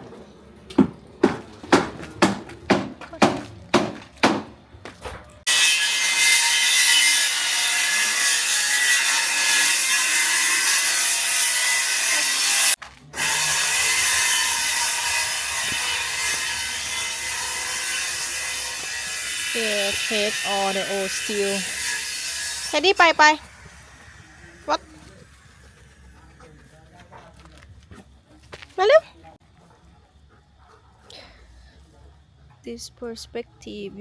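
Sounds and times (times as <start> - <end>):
power cutting tool whining: 5.5 - 26.1
hand saw strokes: 5.5 - 26.7.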